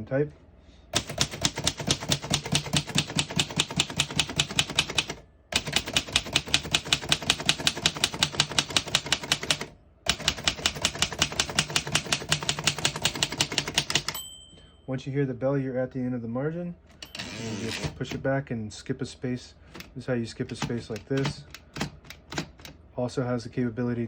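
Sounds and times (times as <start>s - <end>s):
typewriter clacking: 1.0s - 14.2s, 20.5s - 22.8s.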